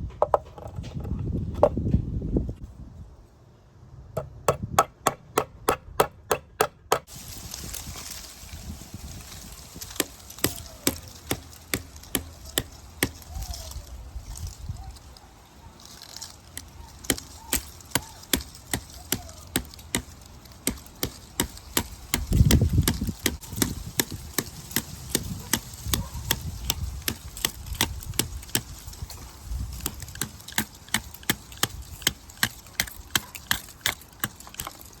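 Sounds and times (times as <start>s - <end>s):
multi-tool striking: 4.2s - 7.1s, 9.8s - 13.4s, 16.2s - 35.0s.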